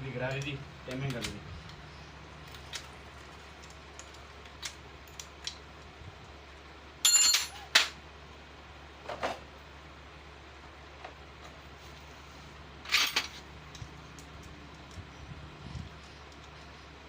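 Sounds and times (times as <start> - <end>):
ringing metal clatter: 7.0 - 7.7.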